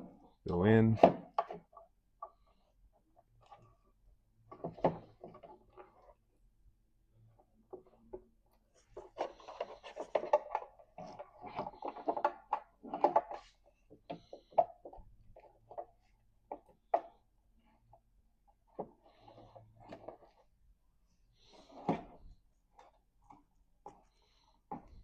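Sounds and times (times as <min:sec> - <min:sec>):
plastic parts clicking and rattling: 0:07.7 - 0:17.2.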